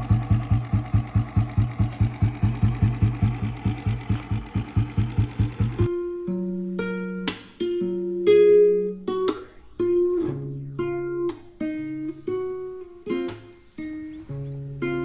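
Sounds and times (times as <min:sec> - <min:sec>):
guitar plucked melody: 0:05.9 - 0:15.0.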